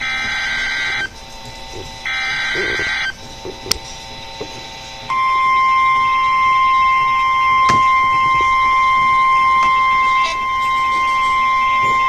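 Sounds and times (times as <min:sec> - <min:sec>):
steady warning alarm tone: 0:00.0 - 0:12.0.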